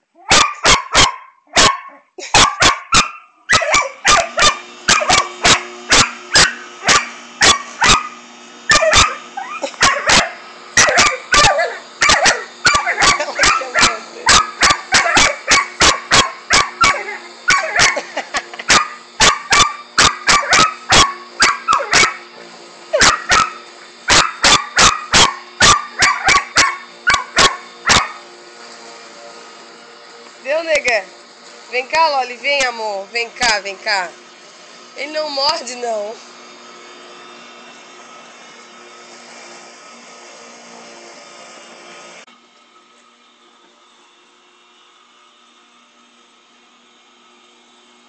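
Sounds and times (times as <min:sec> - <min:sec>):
dog barking rapidly: 0:00.2 - 0:09.2, 0:09.8 - 0:18.0, 0:18.7 - 0:22.2, 0:23.0 - 0:28.2.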